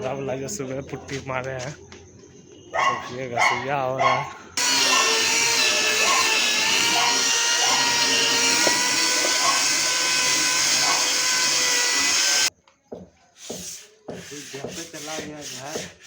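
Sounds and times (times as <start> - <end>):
power sander whining: 4.6 - 12.5.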